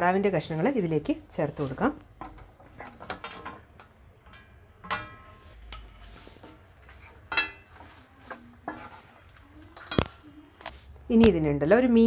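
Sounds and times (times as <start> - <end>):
metal utensil clinking on pan: 1.6 - 6.0, 7.2 - 8.0.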